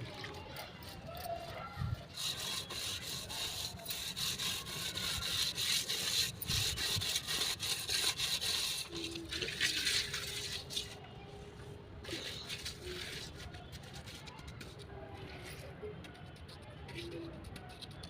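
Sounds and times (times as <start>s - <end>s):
rough scraping strokes: 0.0s - 11.0s, 12.0s - 14.8s.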